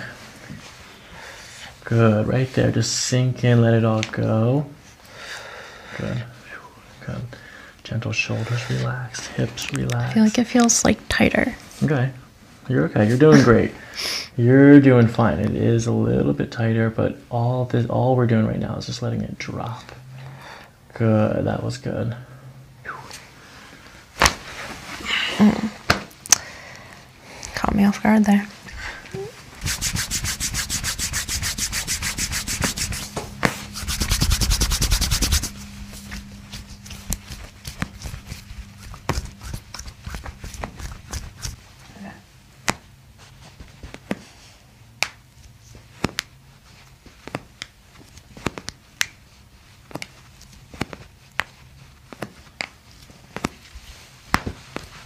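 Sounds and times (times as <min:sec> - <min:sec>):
massage strokes: 0:07.9 - 0:11.9, 0:22.8 - 0:26.1, 0:28.5 - 0:55.0.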